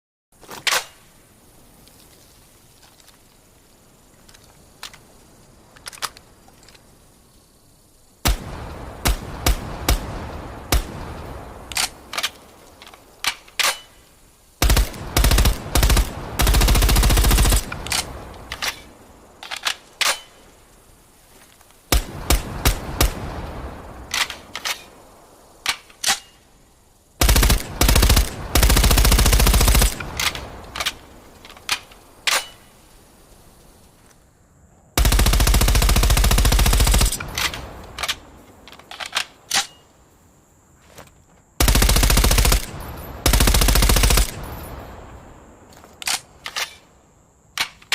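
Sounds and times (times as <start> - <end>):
submachine gun firing: 14.6 - 18.1, 27.2 - 30.4, 35.0 - 37.7, 41.6 - 44.4.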